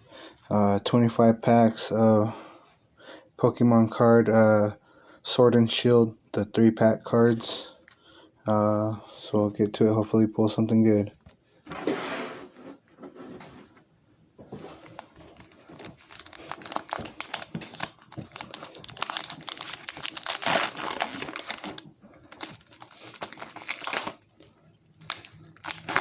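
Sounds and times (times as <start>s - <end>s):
foil wrapper crinkling: 14.8s - 26.0s.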